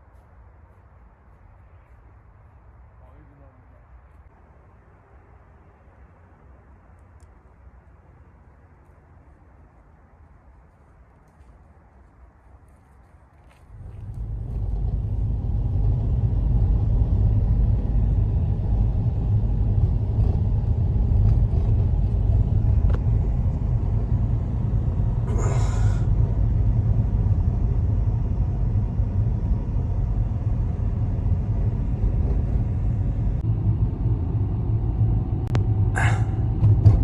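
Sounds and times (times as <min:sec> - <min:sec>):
wind buffeting microphone: 0:13.6 - 0:37.0.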